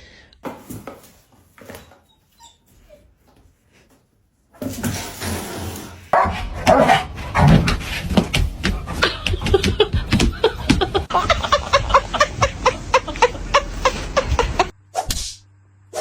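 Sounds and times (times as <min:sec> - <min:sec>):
person laughing: 0:08.8 - 0:14.7
sharp swish: 0:14.9 - 0:16.0.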